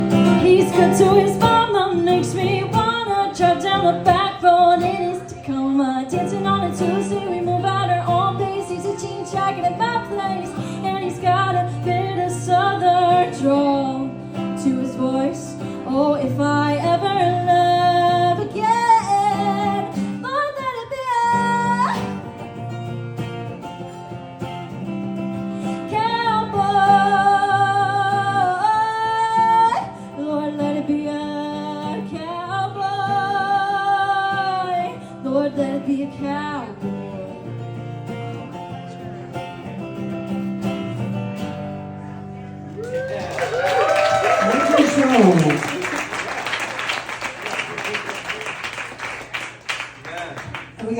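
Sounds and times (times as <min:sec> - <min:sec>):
woman singing country song: 0:00.0 - 0:23.6, 0:24.6 - 0:40.4
strummed acoustic guitar: 0:00.0 - 0:42.8.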